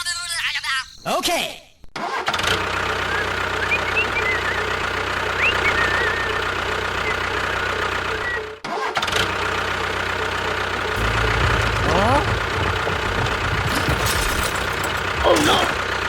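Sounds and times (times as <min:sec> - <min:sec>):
tractor engine running: 0:02.7 - 0:08.5, 0:09.4 - 0:16.0.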